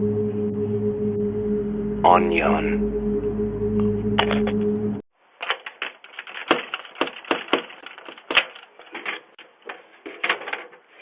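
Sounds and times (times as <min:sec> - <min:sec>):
sharp clicks and knocks: 0:05.4 - 0:10.8.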